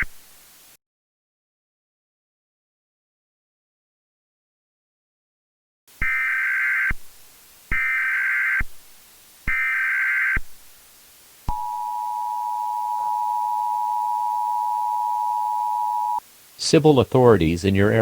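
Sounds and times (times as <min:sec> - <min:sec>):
two-tone attention signal: 0:11.5 - 0:16.2.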